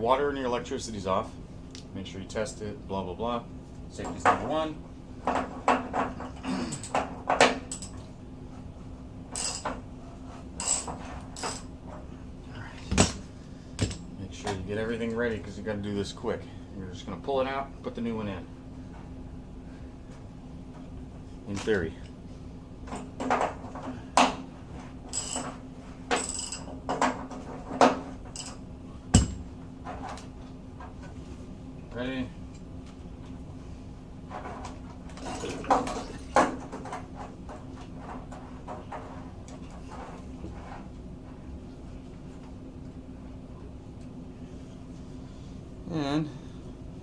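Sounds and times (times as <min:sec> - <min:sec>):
steady low hum: 0:00.0 - 0:47.0
metal tools clinking: 0:09.3 - 0:09.8, 0:10.6 - 0:11.7, 0:25.1 - 0:26.7, 0:28.3 - 0:28.6.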